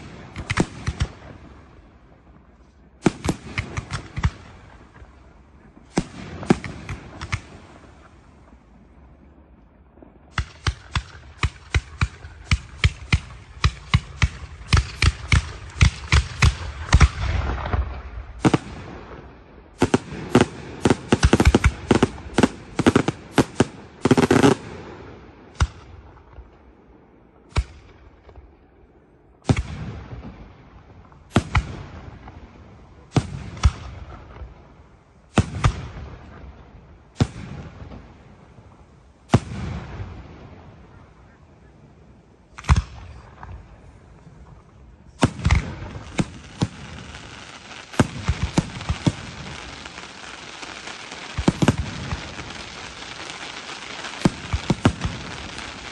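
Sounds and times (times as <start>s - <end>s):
rapid firework bangs: 0.0s - 1.6s, 3.0s - 8.1s, 10.3s - 25.9s, 35.3s - 36.4s, 45.1s - 55.9s.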